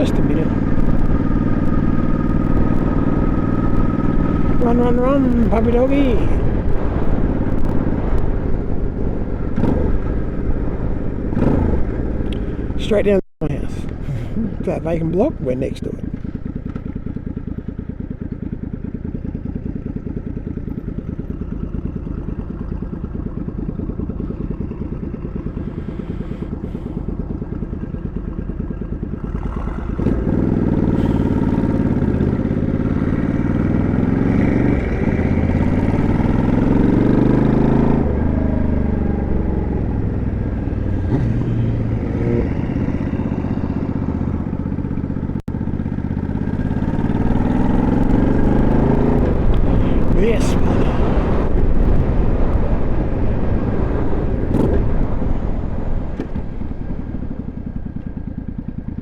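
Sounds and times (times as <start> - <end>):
motorcycle engine revving: 0.0 - 12.8, 16.0 - 59.0.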